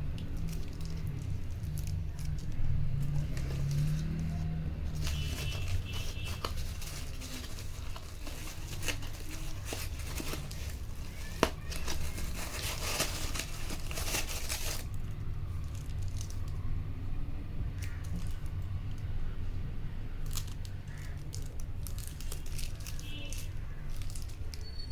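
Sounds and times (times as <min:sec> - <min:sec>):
packaging crinkling and tearing: 0:00.0 - 0:16.8, 0:20.2 - 0:24.9.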